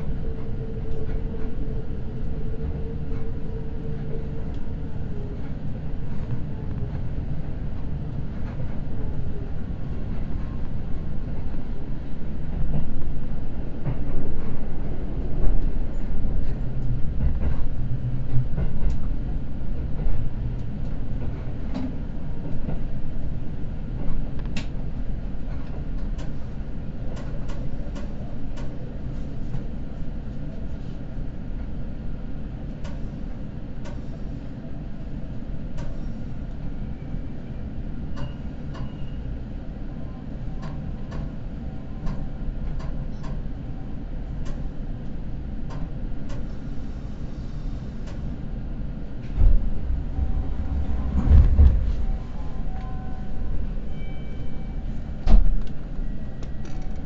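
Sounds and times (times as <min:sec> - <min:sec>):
train running rumble: 0:00.0 - 0:57.0.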